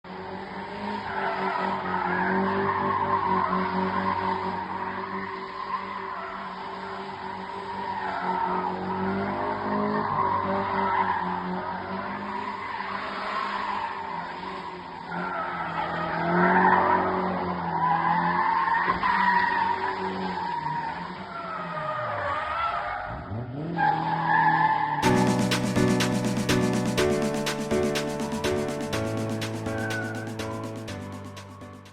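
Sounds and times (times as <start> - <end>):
car tyres squealing: 0.2 - 25.0.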